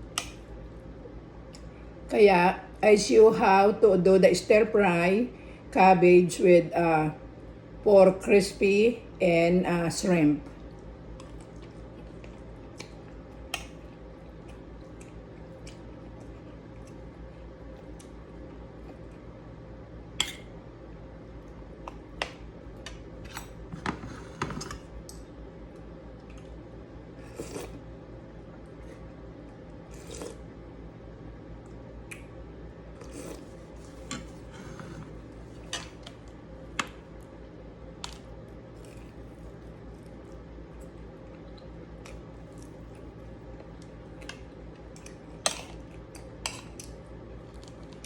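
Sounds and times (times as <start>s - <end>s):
steady low hum: 0.0s - 48.0s
crispy chewing: 38.1s - 48.0s.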